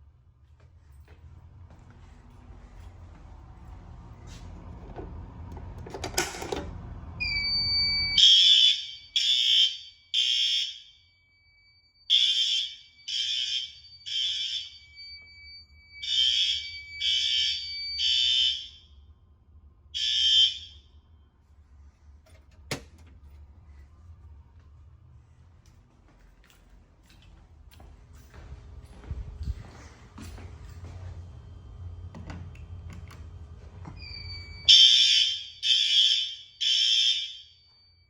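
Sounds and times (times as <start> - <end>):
fire alarm horn blasts: 7.2 - 19.1, 19.9 - 21.4, 34.0 - 38.0.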